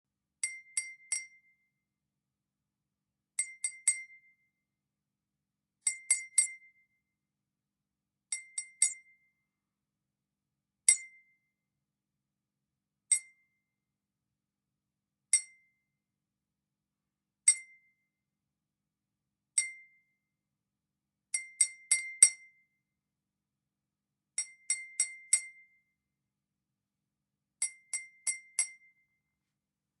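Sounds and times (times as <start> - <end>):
glass tapped with a fork: 0.4 - 1.6, 3.3 - 4.5, 5.8 - 7.0, 8.3 - 9.4, 10.8 - 11.4, 13.1 - 13.6, 15.2 - 15.8, 17.4 - 18.0, 19.5 - 20.2, 21.3 - 22.6, 24.3 - 25.8, 27.6 - 29.2.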